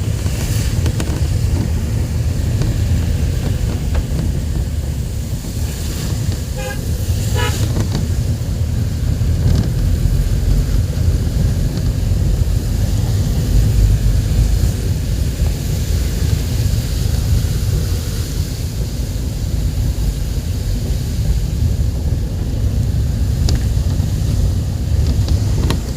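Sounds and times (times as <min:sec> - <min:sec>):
moving train rumbling: 0:00.0 - 0:25.9
wind on microphone: 0:00.0 - 0:25.9
train horn toots: 0:06.4 - 0:07.8.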